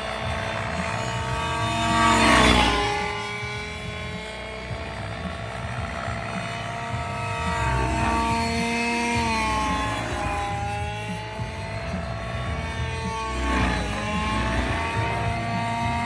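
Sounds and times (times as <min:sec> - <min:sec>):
model helicopter engine: 0:00.0 - 0:16.0
rotor hum: 0:00.0 - 0:16.0.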